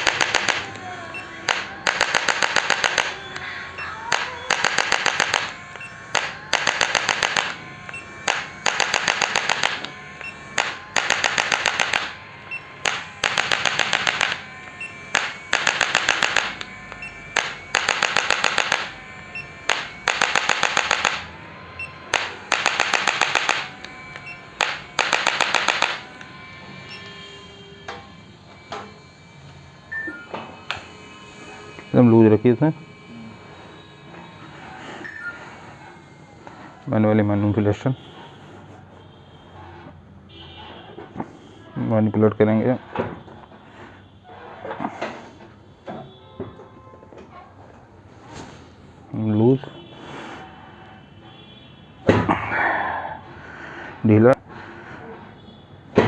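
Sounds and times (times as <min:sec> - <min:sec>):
adjusting instrument rapid clicks: 0:00.0 - 0:27.1.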